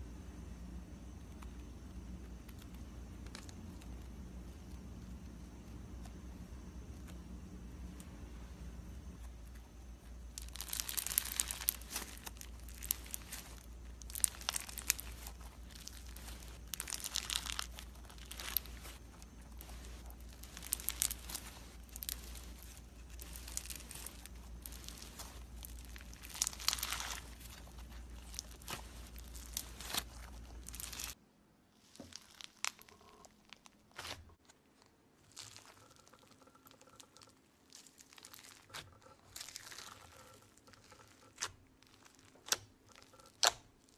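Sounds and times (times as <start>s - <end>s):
low steady hum: 0.0s - 43.9s
slime crackling: 9.1s - 31.2s, 31.8s - 43.9s.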